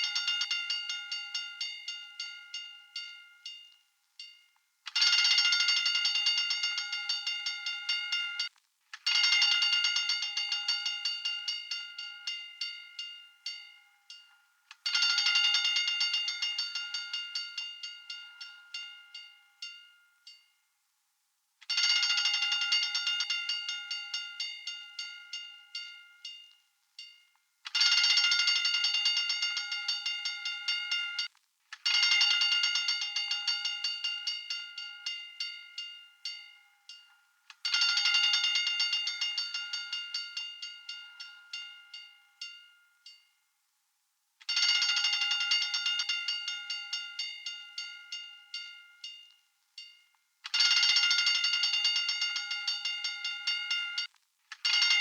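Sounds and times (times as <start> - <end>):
fire alarm bell ringing: 0.0 - 4.4, 5.0 - 8.5, 9.1 - 20.4, 27.8 - 31.3, 31.9 - 43.2, 44.5 - 55.0.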